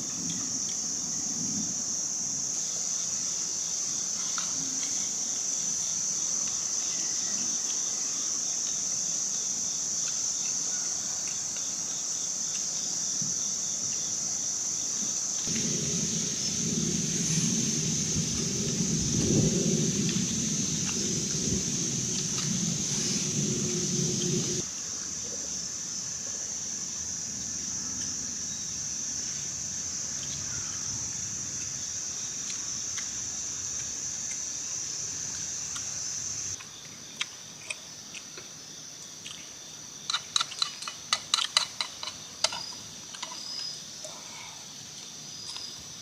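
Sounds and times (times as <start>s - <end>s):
high-pitched insect chorus: 0.0s - 46.0s
low rumble: 15.5s - 24.6s.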